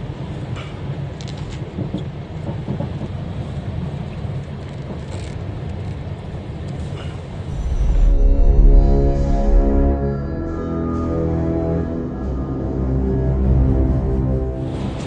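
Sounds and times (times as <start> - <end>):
music: 7.5 - 15.0.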